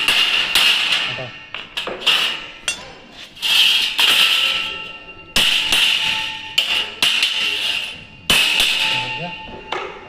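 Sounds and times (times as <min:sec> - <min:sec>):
hammer striking sheet metal: 0:00.0 - 0:10.0
metal ringing: 0:00.0 - 0:10.0.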